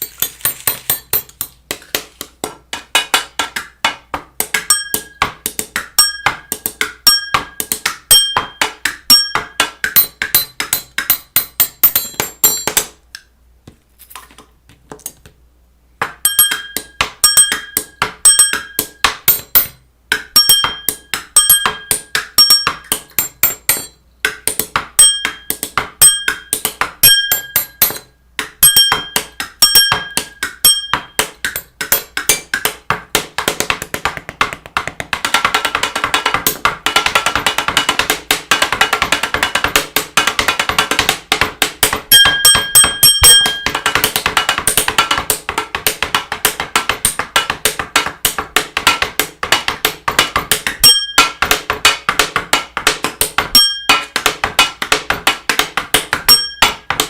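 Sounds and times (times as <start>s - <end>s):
rapid ringing percussive clicks: 4.5s - 12.8s, 16.2s - 32.7s, 42.0s - 45.2s, 50.7s - 51.5s, 56.2s - 57.0s.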